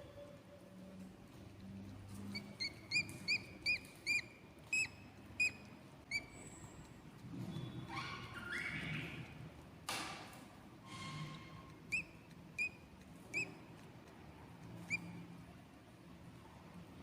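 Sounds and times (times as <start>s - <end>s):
chicks high peeps: 2.2s - 6.9s, 7.8s - 9.4s, 11.8s - 13.7s, 14.7s - 15.3s.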